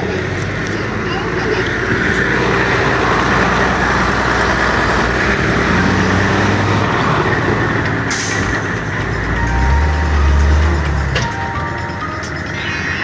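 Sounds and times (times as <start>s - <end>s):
simulated diesel engine running: 0.0s - 13.0s
air-brake hiss: 8.1s - 8.8s.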